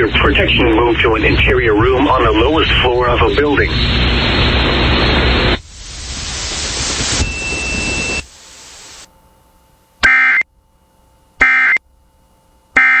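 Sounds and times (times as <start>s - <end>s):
screeching digital data bursts: 2.2s - 9.1s
hiss: 5.4s - 9.1s.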